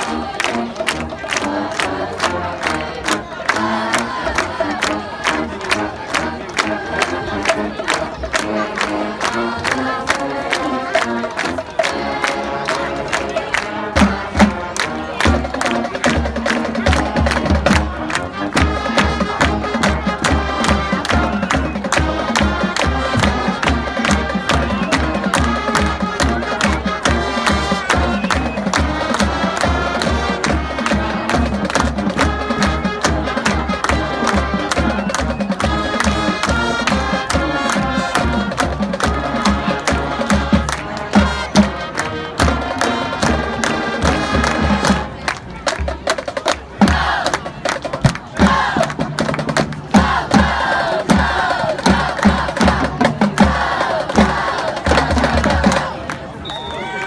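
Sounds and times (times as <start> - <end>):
marching band brass and winds: 0.0 - 57.0
steady drum beat: 14.0 - 41.8, 45.8 - 56.0.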